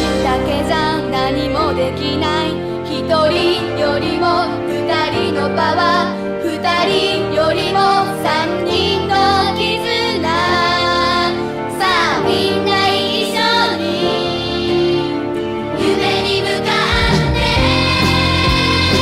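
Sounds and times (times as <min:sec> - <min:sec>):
instrumental accompaniment: 0:00.0 - 0:19.0.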